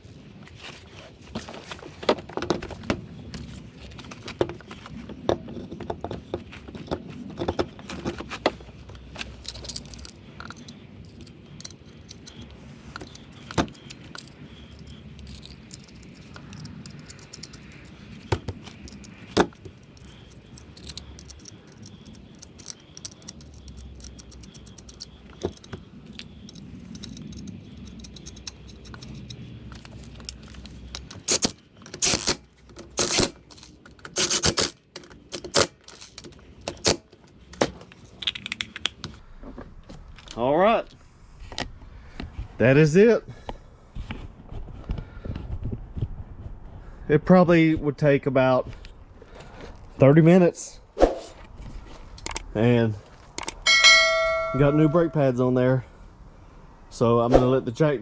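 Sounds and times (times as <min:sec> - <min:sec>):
metallic clinks of hand tools: 0:53.7 - 0:55.2.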